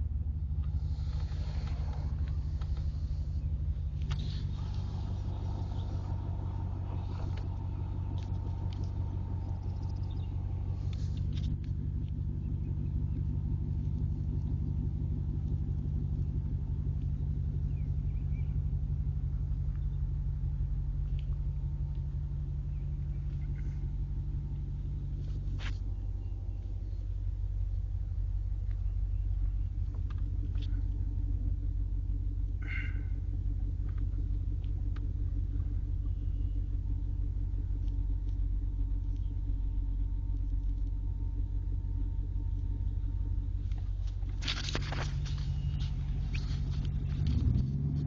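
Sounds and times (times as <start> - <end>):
car driving on road: 0.0 - 48.0.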